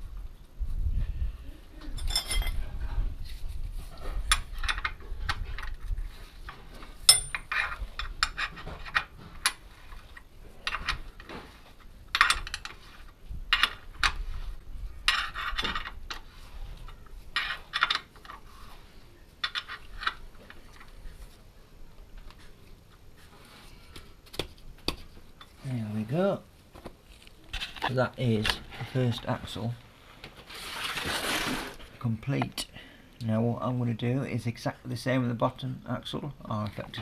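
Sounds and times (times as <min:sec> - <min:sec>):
metal hand tools clinking: 0:02.0 - 0:02.6, 0:07.1 - 0:09.6.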